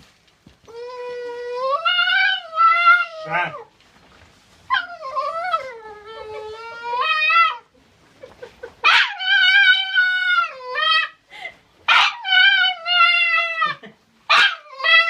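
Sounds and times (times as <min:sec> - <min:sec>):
dog howling: 0:00.8 - 0:03.7, 0:11.9 - 0:15.0.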